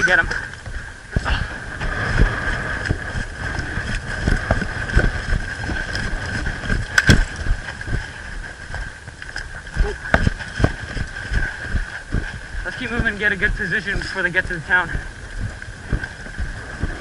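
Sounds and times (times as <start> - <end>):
footsteps: 0.0 - 17.0
gear rustling: 0.0 - 17.0
wind buffeting microphone: 0.0 - 17.0.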